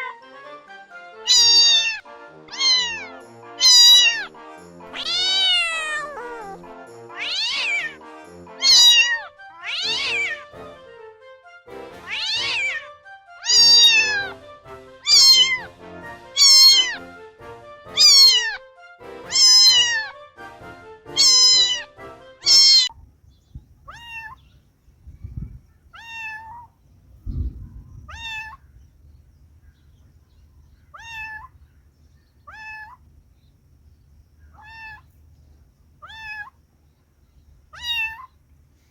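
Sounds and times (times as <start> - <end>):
cat meowing: 1.3 - 4.3, 5.0 - 8.0, 8.6 - 10.4, 12.0 - 14.4, 15.0 - 15.7, 16.4 - 17.0, 18.0 - 18.6, 19.3 - 20.2, 21.1 - 23.0, 23.8 - 24.5, 25.8 - 26.8, 27.5 - 28.7, 30.8 - 31.6, 32.4 - 33.1, 34.5 - 35.1, 36.0 - 36.6, 37.7 - 38.4.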